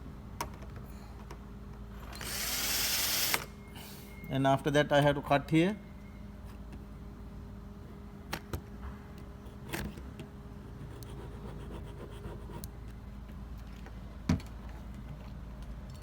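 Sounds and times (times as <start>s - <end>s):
steady low hum: 3.4s - 16.0s.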